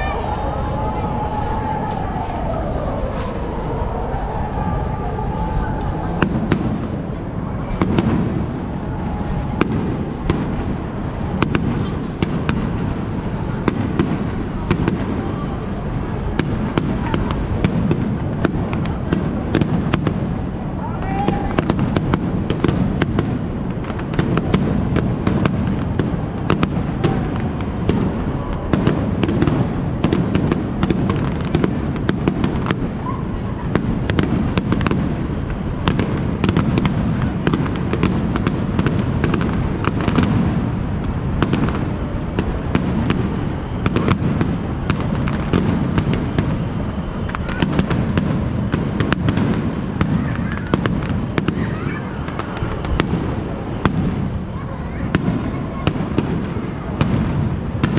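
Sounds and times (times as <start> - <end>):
steady rumble: 0.0 - 14.6
fireworks bursting: 0.0 - 57.9.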